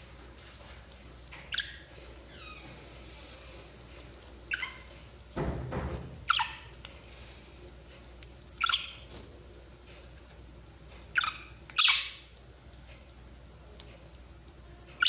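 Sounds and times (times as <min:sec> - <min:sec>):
parrots chirping: 0:01.3 - 0:03.7, 0:04.5 - 0:05.0, 0:06.2 - 0:06.8, 0:08.6 - 0:09.1, 0:11.1 - 0:12.3.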